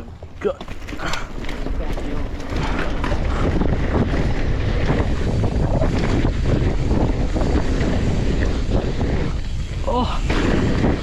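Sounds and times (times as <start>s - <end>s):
wind rushing over microphone: 1.0s - 11.0s.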